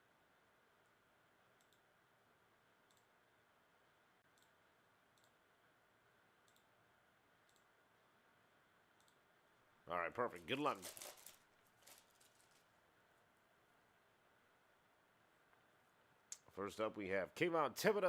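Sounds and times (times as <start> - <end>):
faint room hiss: 0.0 - 18.0.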